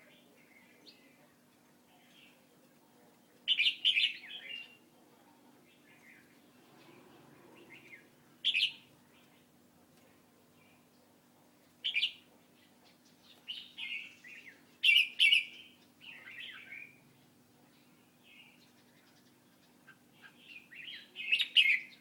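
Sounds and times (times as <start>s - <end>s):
faint low hum: 0.0s - 22.0s
bird chirping: 1.9s - 4.9s, 5.6s - 9.6s, 11.8s - 22.0s.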